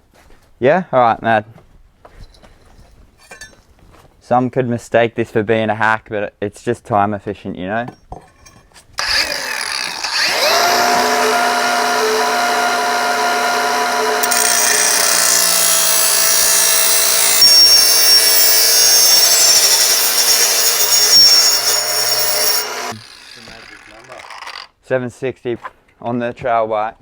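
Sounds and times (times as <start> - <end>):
power tool cutting metal: 9.0 - 24.7.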